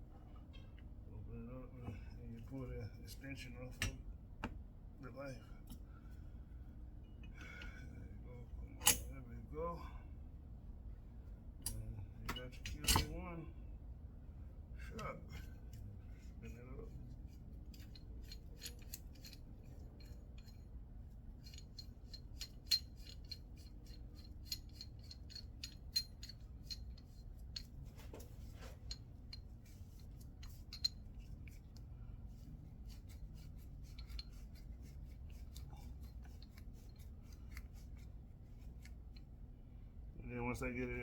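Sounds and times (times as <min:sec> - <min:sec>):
metallic clicks of threaded adjuster: 0:08.8 - 0:09.2, 0:11.6 - 0:13.1.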